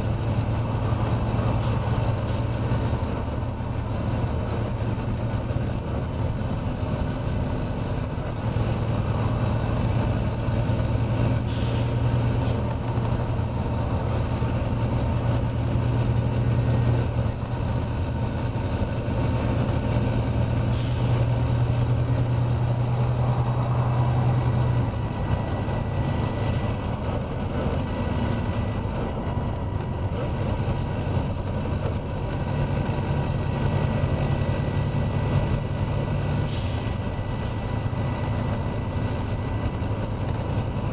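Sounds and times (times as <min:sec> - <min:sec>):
bus diesel engine running: 0:00.0 - 0:40.9
air brake hisses: 0:11.4 - 0:12.6, 0:20.7 - 0:21.6, 0:36.4 - 0:37.6.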